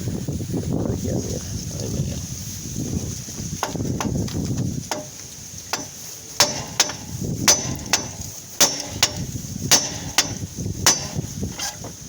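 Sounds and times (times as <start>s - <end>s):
hammer striking steel: 4.9s - 11.4s.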